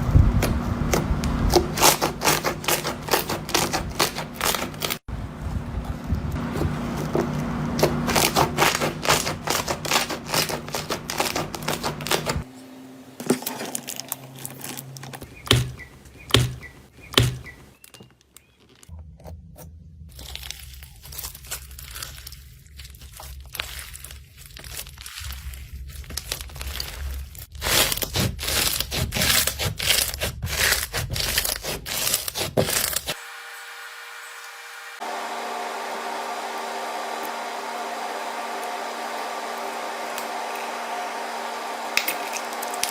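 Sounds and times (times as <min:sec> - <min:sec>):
slime crackling and popping: 0:20.1 - 0:33.0
steady hum: 0:33.1 - 0:42.9.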